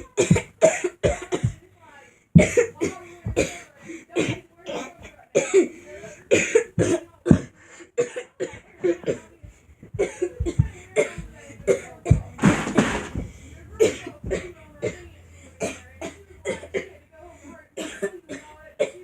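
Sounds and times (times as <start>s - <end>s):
person coughing: 0.0s - 1.6s, 6.3s - 9.3s, 15.6s - 17.0s, 17.8s - 19.0s.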